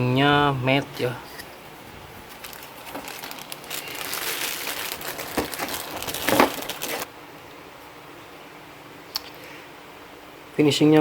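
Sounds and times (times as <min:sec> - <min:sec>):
plastic packaging crinkling: 0:02.2 - 0:07.1.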